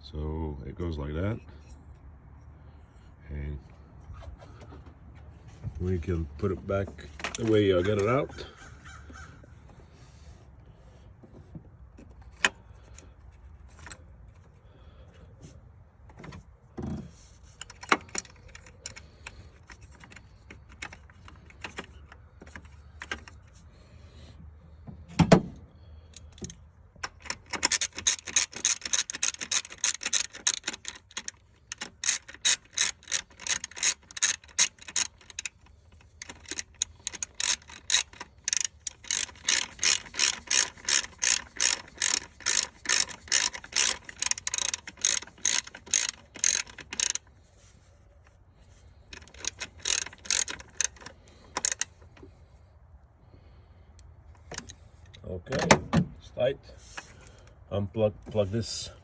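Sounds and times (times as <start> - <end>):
socket ratchet clicking: 26.1 - 47.3, 49.1 - 52.2.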